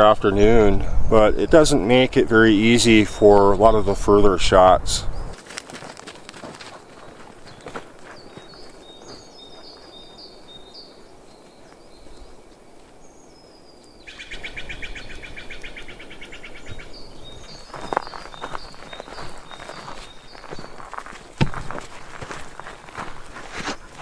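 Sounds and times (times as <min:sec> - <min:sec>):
small birds chirping: 0:04.6 - 0:05.4, 0:06.6 - 0:24.0.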